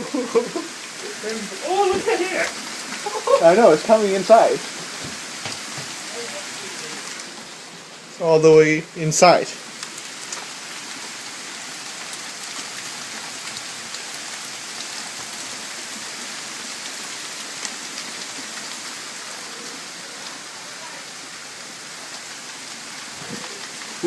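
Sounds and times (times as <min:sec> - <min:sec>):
hailstones pelting the ground: 0:00.0 - 0:24.0.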